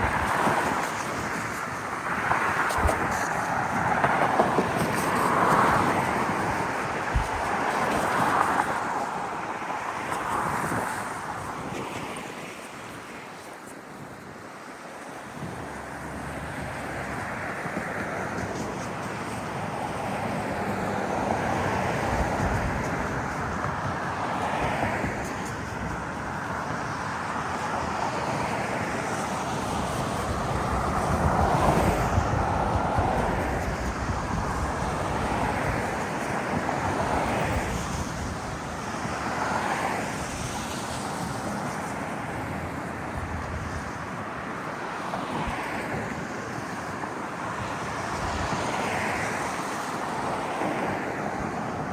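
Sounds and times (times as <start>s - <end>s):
vehicles passing: 15.2s - 51.9s.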